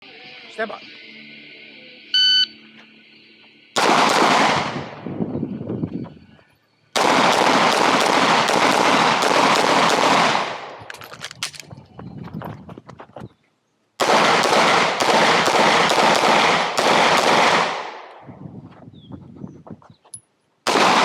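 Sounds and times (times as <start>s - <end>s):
shot timer beep: 2.2s - 2.5s
pistol shots: 3.8s - 5.0s, 7.0s - 11.6s, 14.0s - 18.2s, 20.7s - 21.0s.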